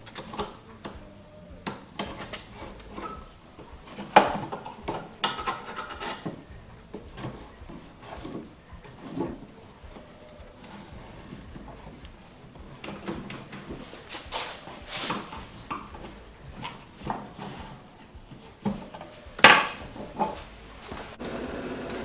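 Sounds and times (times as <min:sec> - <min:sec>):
metal tools clinking and scraping: 0:00.0 - 0:21.1
steady hum: 0:00.0 - 0:22.0.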